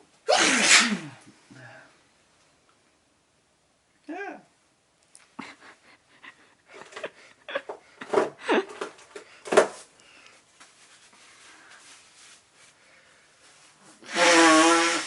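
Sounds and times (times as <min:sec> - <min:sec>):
person sneezing: 0:00.3 - 0:01.8.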